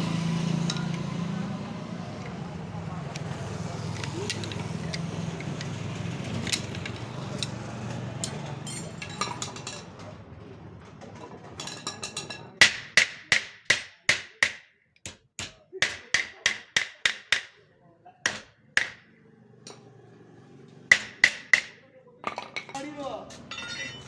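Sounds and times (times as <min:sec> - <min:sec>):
hammer striking metal: 0:18.2 - 0:19.1, 0:20.9 - 0:21.8.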